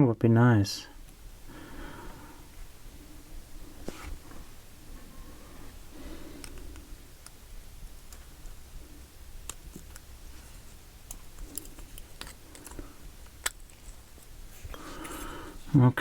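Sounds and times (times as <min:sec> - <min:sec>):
small metal parts clicking: 0:11.1 - 0:12.8.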